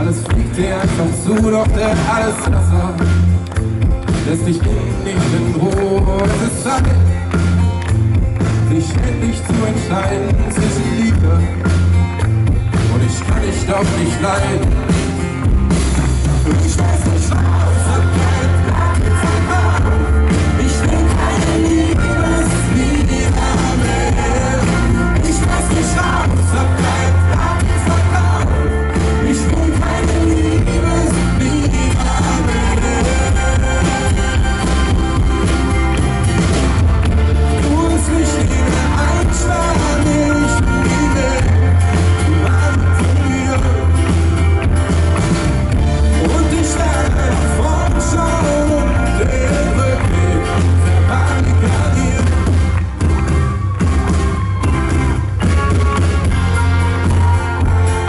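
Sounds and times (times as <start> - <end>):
person singing: 0.0 - 3.4, 4.0 - 7.7, 12.7 - 15.2, 16.2 - 36.8, 37.4 - 44.6, 45.9 - 54.8
heavy steady bass: 0.0 - 58.0
pop-rock band playing: 0.0 - 58.0.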